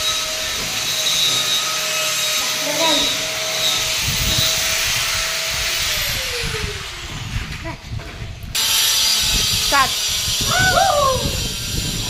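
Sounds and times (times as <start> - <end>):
power tool motor spinning down: 2.2 - 7.6, 8.5 - 12.0.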